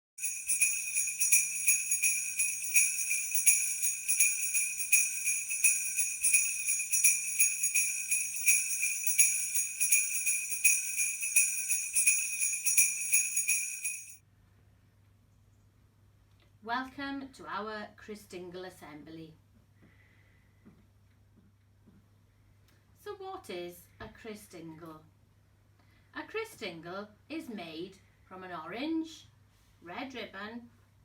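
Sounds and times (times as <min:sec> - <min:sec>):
sleigh bells jingling: 0:00.1 - 0:14.2.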